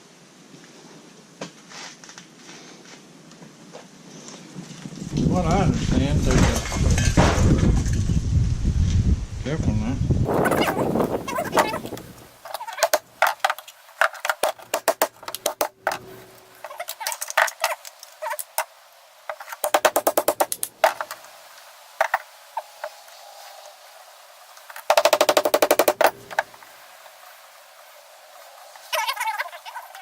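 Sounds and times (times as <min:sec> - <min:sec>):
tool making rapid sharp clicks: 0:19.6 - 0:20.7, 0:24.9 - 0:26.1.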